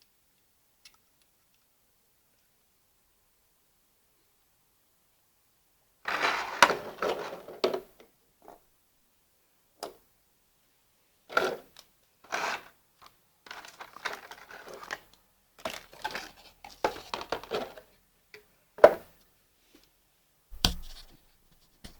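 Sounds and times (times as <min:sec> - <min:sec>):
packaging crinkling and rustling: 0:13.5 - 0:15.0, 0:15.6 - 0:17.9
sharp knock: 0:20.5 - 0:21.1.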